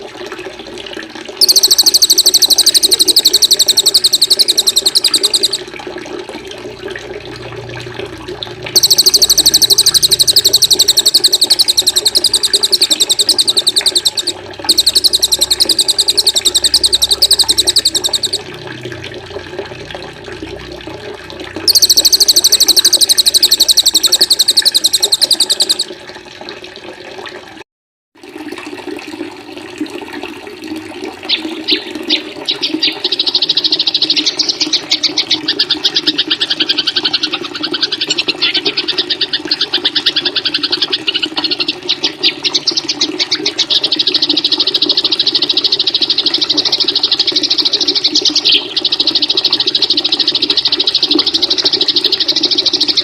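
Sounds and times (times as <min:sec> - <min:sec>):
running water: 0:00.0 - 0:27.4, 0:28.2 - 0:53.0
bird buzzing trill: 0:01.4 - 0:05.6, 0:08.8 - 0:18.4, 0:21.7 - 0:25.9
soft bird chirps: 0:01.4 - 0:05.6, 0:08.8 - 0:18.4, 0:21.7 - 0:25.9.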